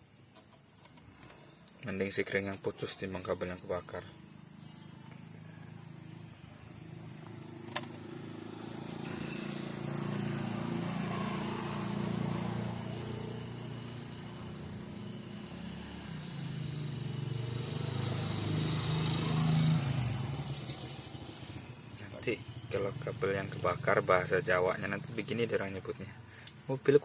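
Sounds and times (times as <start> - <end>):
faint insect chirr: 0.0 - 27.0
vehicle engine humming: 4.0 - 25.4.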